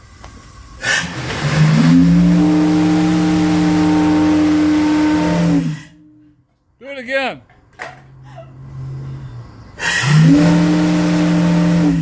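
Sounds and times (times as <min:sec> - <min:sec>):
steam hissing: 0:00.0 - 0:06.0, 0:09.6 - 0:12.0
steam whistle blast: 0:00.8 - 0:06.4, 0:09.8 - 0:12.0.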